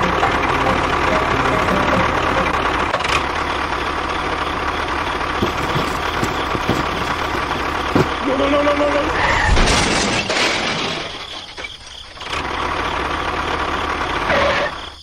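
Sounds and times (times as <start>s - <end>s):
miniature tractor engine running: 0.0s - 8.6s.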